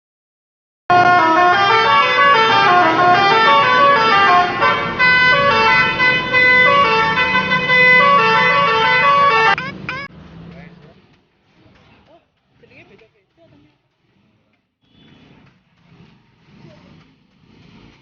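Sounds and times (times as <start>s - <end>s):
multi-tone air horns melody: 0.9s - 9.6s.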